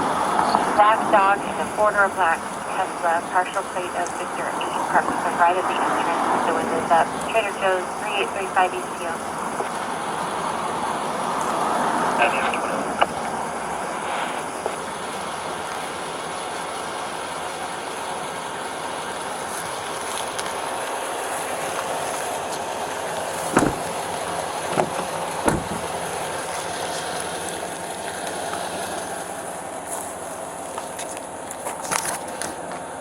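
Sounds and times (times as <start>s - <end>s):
vehicle rumble and road noise: 0.0s - 33.0s
short knocks: 23.4s - 24.1s, 24.7s - 26.0s.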